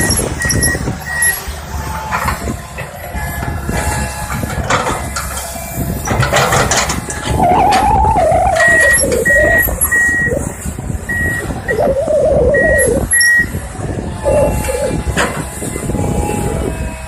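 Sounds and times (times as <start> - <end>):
backup alarm beeps: 0.0 - 1.4, 7.4 - 13.6
heavy diesel engine rumble: 0.0 - 17.0.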